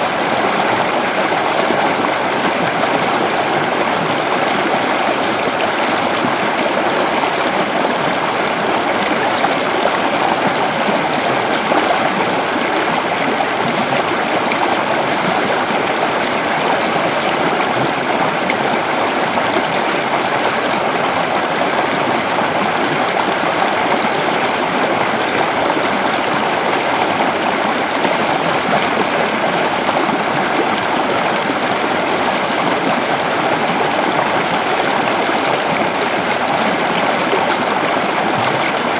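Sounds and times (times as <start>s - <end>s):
water flowing: 0.0s - 38.9s.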